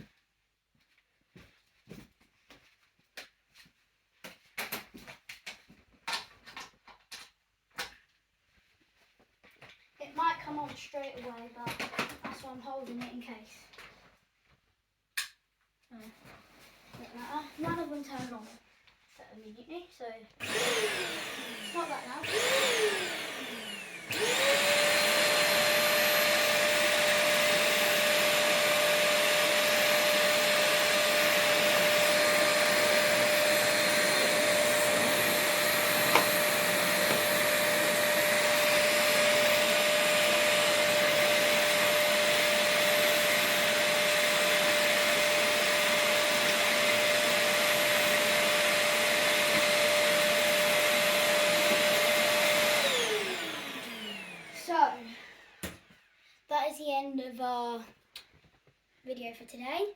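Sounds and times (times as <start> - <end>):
vacuum cleaner motor whine: 20.4 - 56.2.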